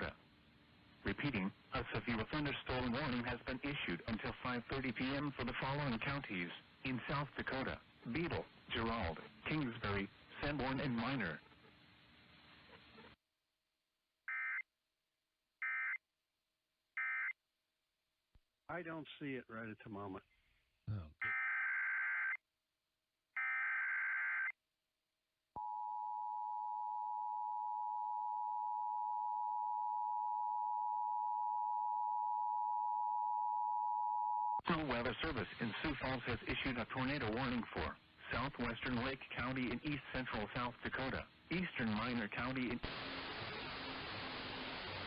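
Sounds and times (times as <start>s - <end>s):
radio static hiss: 1.0s - 13.2s, 34.7s - 45.0s
continuous high alarm beep: 14.3s - 14.6s, 15.6s - 16.0s, 17.0s - 17.4s, 21.2s - 22.4s, 23.4s - 24.5s, 25.6s - 34.6s.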